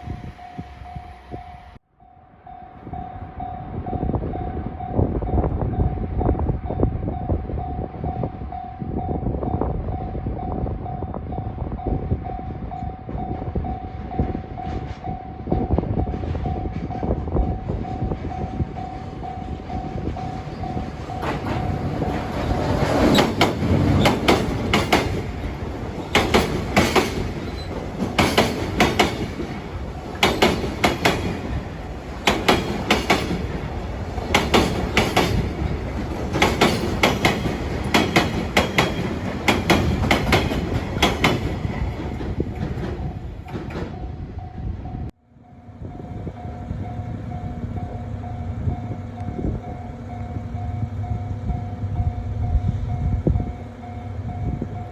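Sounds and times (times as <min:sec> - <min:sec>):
freight train passing: 0:00.0 - 0:54.9
train wheels clacking on rail joints: 0:14.6 - 0:44.2.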